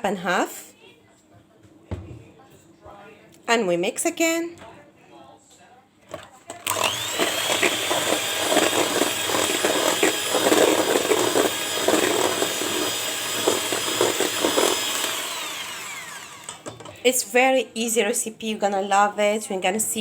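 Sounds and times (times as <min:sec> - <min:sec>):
electric mixer whining: 0:06.6 - 0:16.9.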